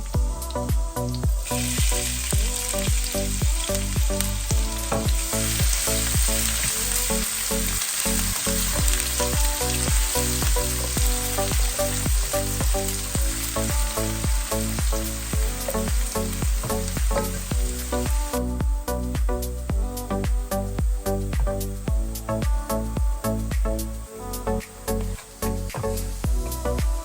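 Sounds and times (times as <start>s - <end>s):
food sizzling in a pan: 0.0s - 19.5s
background music with beat: 0.0s - 27.0s.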